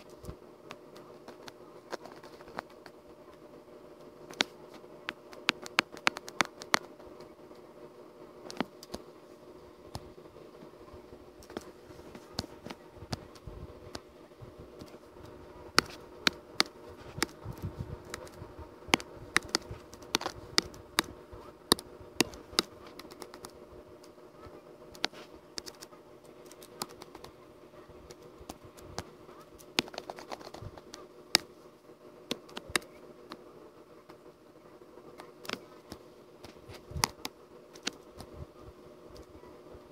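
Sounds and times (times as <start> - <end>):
low electrical hum: 0.0 - 39.9
computer keys and mouse clicking: 5.1 - 6.9, 15.8 - 21.1, 21.7 - 23.6, 24.9 - 27.3, 29.6 - 31.5.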